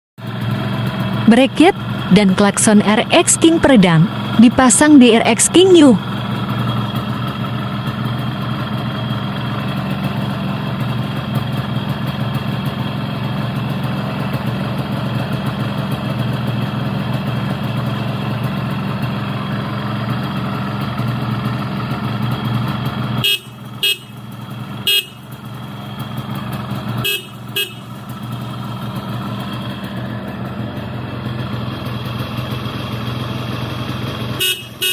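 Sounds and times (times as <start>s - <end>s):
motorcycle engine idling: 0.2s - 34.9s
horn short beeps: 23.2s - 24.2s, 24.9s - 25.2s, 27.0s - 27.9s, 34.4s - 34.9s.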